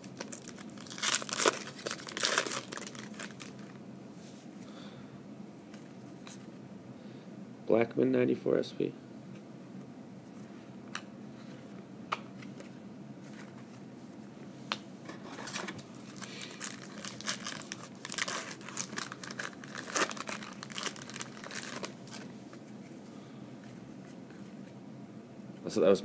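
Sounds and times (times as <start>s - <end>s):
plastic wrapper crinkling: 0.0s - 3.8s, 15.4s - 22.3s.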